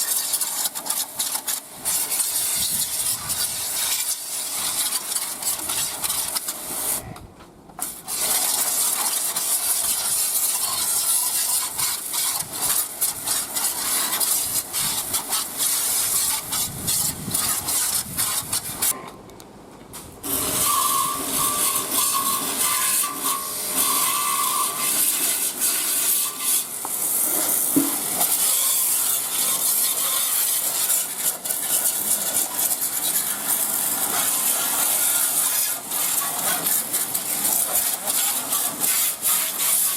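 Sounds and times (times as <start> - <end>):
hissing water spray: 0.0 - 7.1, 7.8 - 19.0, 20.0 - 39.9
rubbing on motorcycle frame: 0.0 - 7.1, 7.8 - 19.0, 27.3 - 39.9.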